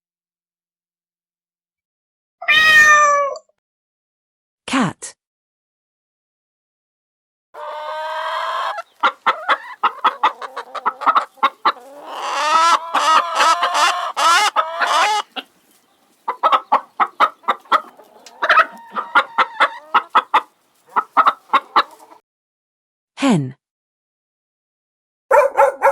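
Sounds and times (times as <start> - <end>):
chicken drawn-out calls: 7.6 - 22.2
chickens clucking: 7.6 - 22.2.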